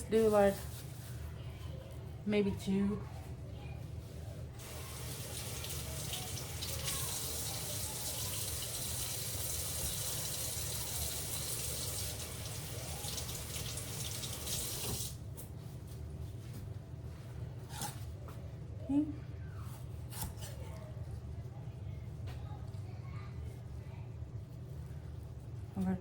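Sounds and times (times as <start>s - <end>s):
tap water splashing into sink: 4.7s - 15.2s.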